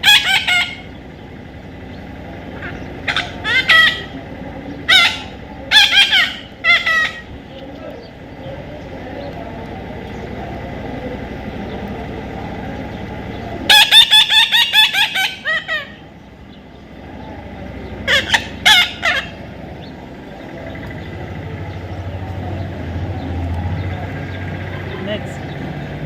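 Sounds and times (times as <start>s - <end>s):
parrot harsh squawks: 4.9s - 7.3s, 13.7s - 16.0s.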